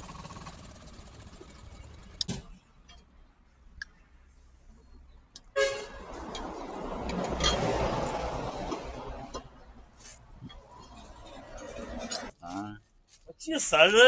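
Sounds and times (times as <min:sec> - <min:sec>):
vehicle horn honk: 0:05.5 - 0:06.1.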